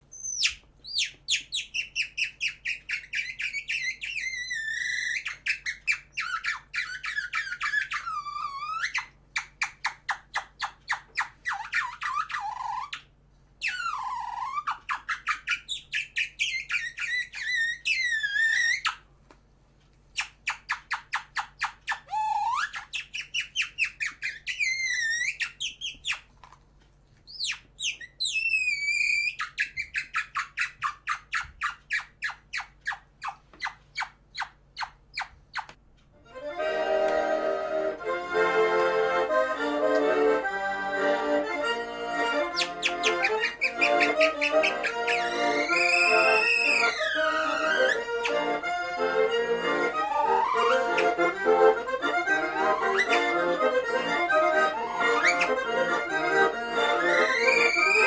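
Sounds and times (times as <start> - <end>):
person whistling trills: 13.6 - 14.8, 21.9 - 26.2, 27.3 - 30.7, 42.5 - 48.4, 49.9 - 51.5, 52.2 - 58.0.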